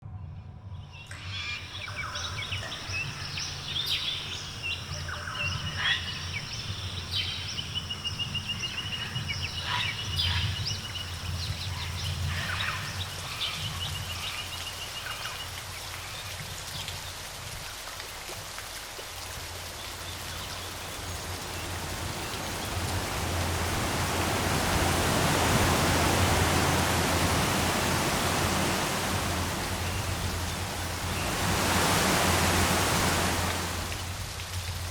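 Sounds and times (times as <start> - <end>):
birds chirping and trilling: 0.8 - 17.0, 19.7 - 34.1
falling water rushing: 8.6 - 34.9.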